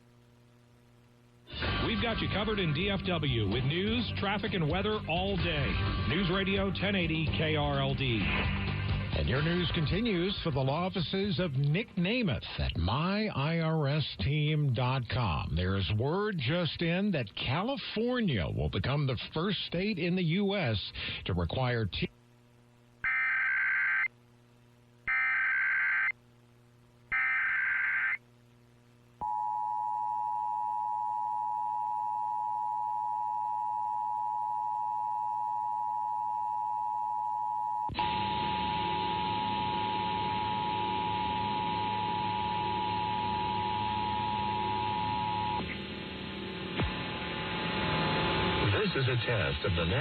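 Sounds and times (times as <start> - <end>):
radio reception hiss: 0.0 - 8.6, 9.2 - 24.1, 38.0 - 50.0.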